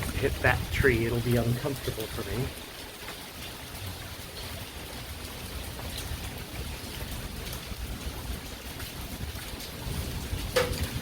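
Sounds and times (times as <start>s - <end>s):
dripping water: 0.0s - 11.0s
rain falling: 0.0s - 11.0s.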